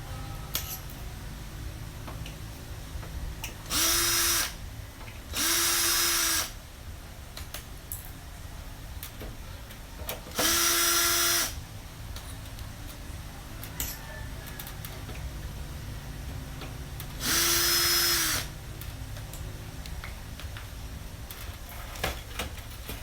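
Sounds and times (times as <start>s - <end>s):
electric drill motor spinning: 3.6s - 4.6s, 5.3s - 6.6s, 10.3s - 11.6s, 17.1s - 18.6s.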